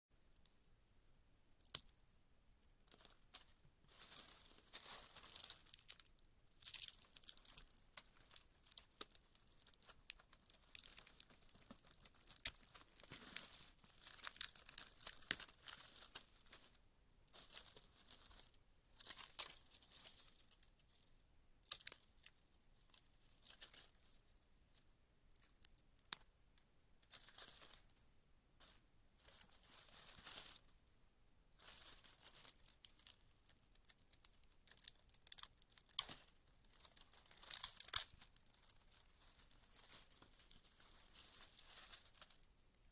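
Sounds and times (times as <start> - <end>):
twigs snapping: 1.6 - 1.9, 4.1 - 16.7, 21.6 - 22.0, 34.2 - 42.7
leaves rustling: 2.9 - 20.4, 27.1 - 27.9, 28.6 - 30.7, 31.6 - 33.2, 34.6 - 42.9.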